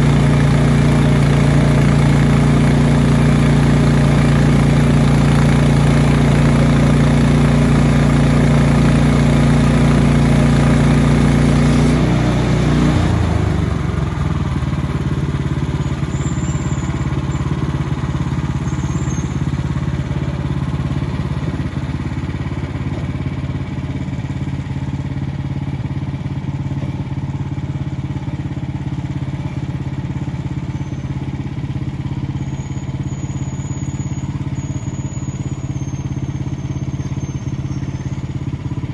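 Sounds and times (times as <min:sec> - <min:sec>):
small gas engine running: 0:00.0 - 0:38.9.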